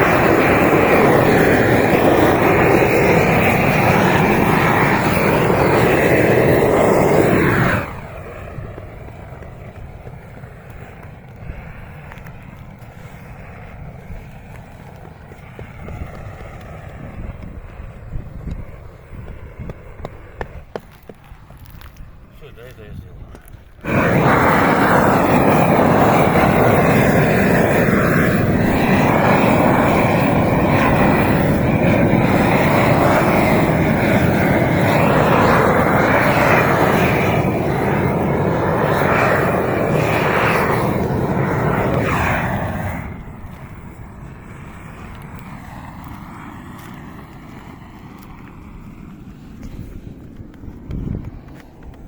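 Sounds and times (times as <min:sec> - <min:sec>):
roofing torch burning: 0:00.0 - 0:52.0.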